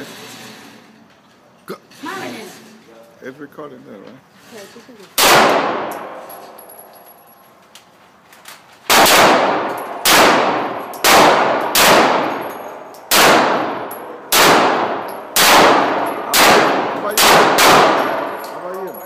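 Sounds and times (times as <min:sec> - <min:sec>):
handgun shots echoing: 0:05.2 - 0:06.6, 0:08.9 - 0:18.9.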